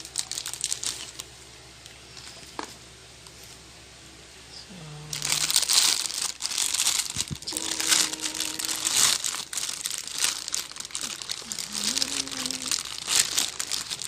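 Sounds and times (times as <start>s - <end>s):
gift packaging crinkling: 0.0s - 1.3s, 5.1s - 14.0s.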